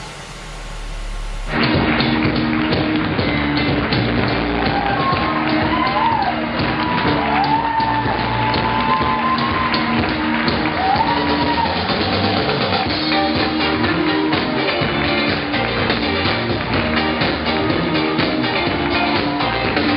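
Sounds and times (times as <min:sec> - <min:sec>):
rock song: 0:01.4 - 0:19.9.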